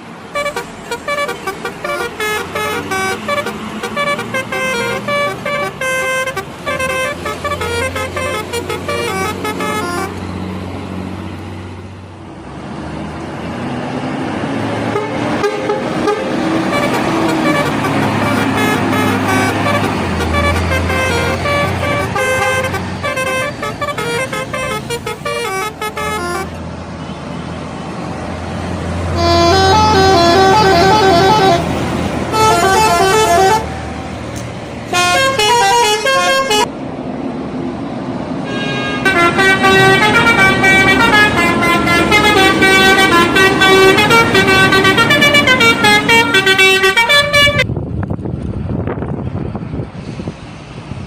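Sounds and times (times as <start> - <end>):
bus engines running: 0.0 - 51.0
bus horns playing tunes: 0.3 - 10.4, 14.6 - 26.6, 28.8 - 36.7, 38.4 - 47.7.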